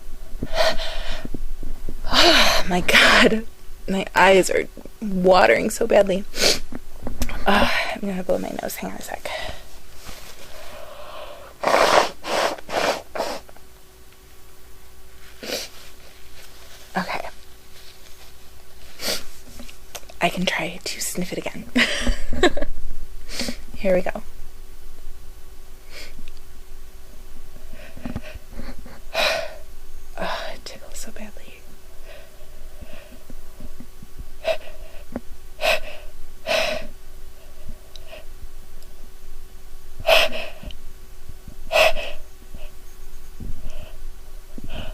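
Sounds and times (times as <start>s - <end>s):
woman gasping breaths: 0.4s - 1.3s
woman blowing her nose: 11.6s - 13.5s, 15.4s - 15.8s, 19.0s - 19.3s.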